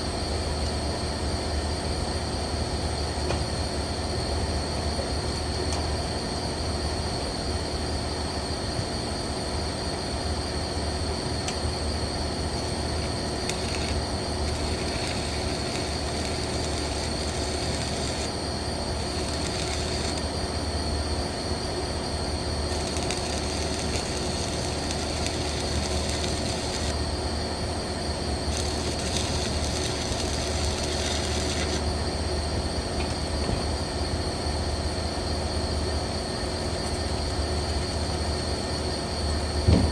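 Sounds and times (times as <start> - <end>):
low machine hum: 0.0 - 39.9
welding hiss: 12.3 - 20.8, 22.6 - 27.1, 28.3 - 32.0.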